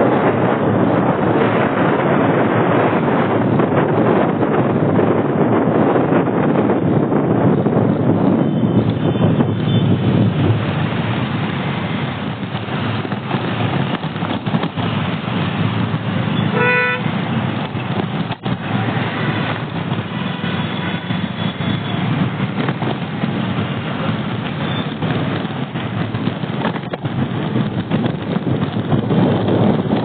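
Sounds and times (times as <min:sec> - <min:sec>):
road traffic noise: 0:00.0 - 0:30.0
vehicle horn toot: 0:16.3 - 0:17.1, 0:20.2 - 0:22.0.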